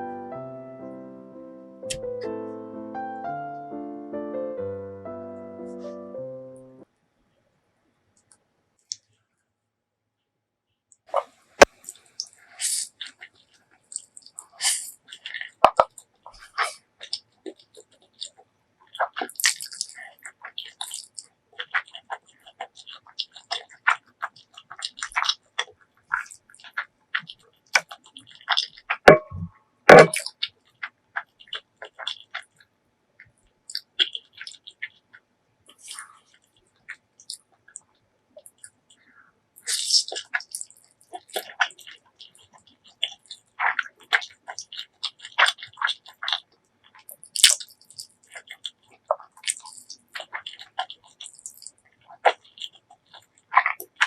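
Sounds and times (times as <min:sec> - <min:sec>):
wet chewing mouth sounds: 0:11.2 - 0:54.0.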